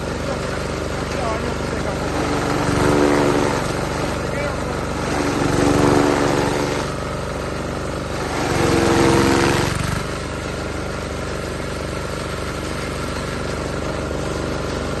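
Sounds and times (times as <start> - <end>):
engine-driven hay cutter running: 0.0 - 15.0.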